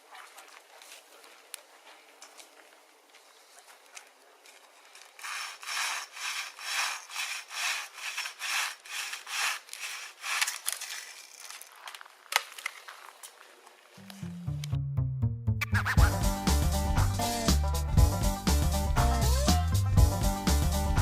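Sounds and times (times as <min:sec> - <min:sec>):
regular rasping strokes: 0:04.8 - 0:12.0.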